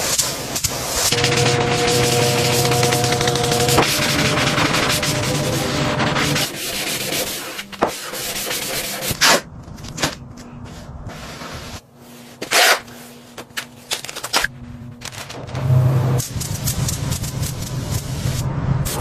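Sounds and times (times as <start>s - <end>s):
sanding rubbing on surface: 1.1s - 9.4s.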